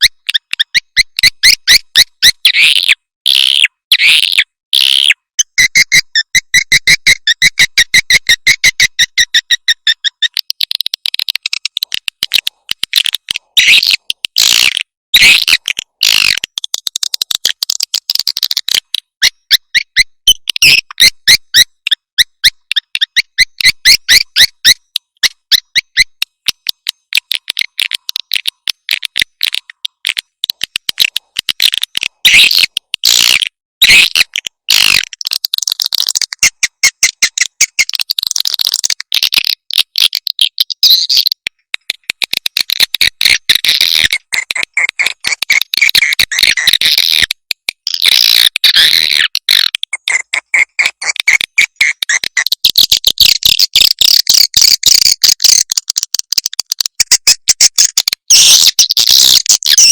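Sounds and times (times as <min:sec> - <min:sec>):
swiftlets chirping and twittering: 0:58.3 - 0:59.9.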